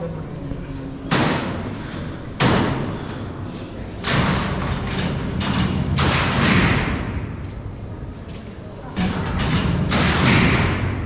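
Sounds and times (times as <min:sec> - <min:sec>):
steel cell doors sliding and slamming: 0:01.1 - 0:07.4, 0:09.0 - 0:11.0.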